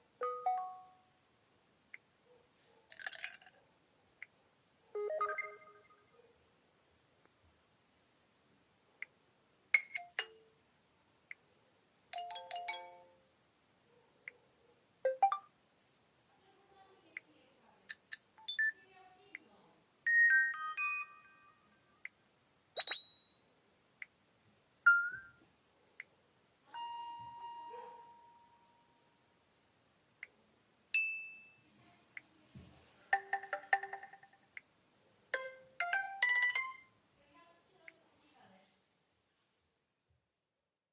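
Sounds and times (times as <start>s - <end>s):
phone notification chimes: 0.2s - 1.0s, 5.0s - 6.0s
single electronic blips: 22.8s - 23.4s.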